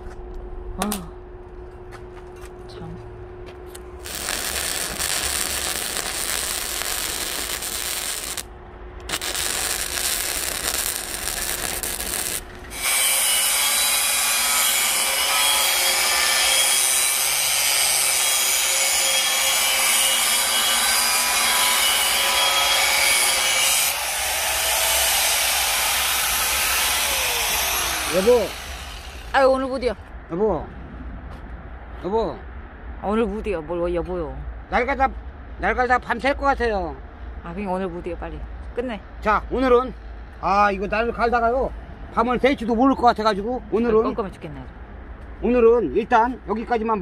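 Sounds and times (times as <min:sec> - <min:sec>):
power grinder grinding steel: 0:04.0 - 0:08.4, 0:09.1 - 0:29.3.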